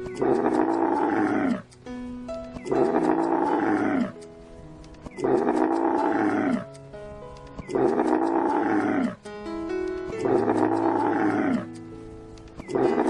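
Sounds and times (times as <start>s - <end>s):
soft background music: 0.0s - 13.0s
large animal harsh call: 0.2s - 1.6s, 2.6s - 4.2s, 5.2s - 6.7s, 7.7s - 9.2s, 10.2s - 11.7s, 12.7s - 13.0s.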